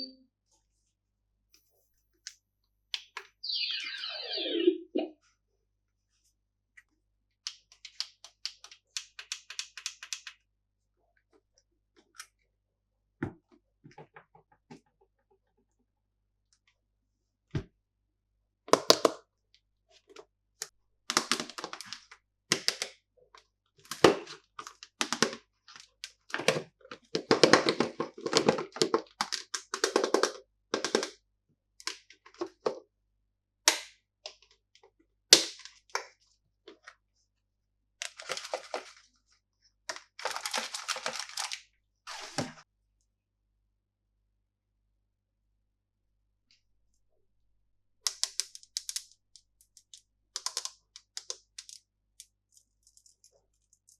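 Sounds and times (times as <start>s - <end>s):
plastic packaging crinkling and snapping: 23.9s - 31.1s, 38.0s - 39.1s, 39.9s - 42.4s.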